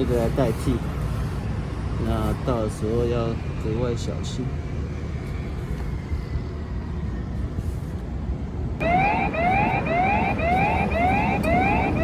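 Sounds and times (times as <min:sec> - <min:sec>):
electronic siren yelping: 0:08.8 - 0:12.0.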